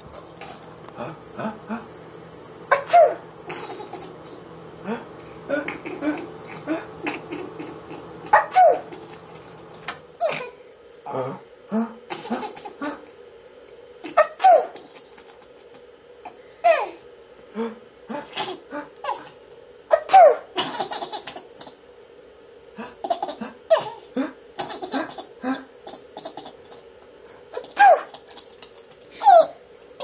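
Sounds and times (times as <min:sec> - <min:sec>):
person sneezing: 0:02.7 - 0:07.6, 0:08.3 - 0:09.0, 0:10.2 - 0:13.0, 0:14.0 - 0:14.8, 0:16.6 - 0:19.3, 0:19.9 - 0:21.4, 0:22.8 - 0:26.1, 0:27.5 - 0:28.1
child laughing and squealing: 0:08.3 - 0:09.4, 0:29.2 - 0:29.6.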